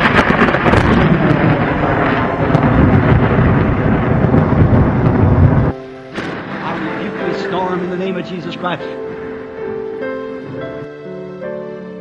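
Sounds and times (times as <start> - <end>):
rumbling thunder: 0.0 - 10.9.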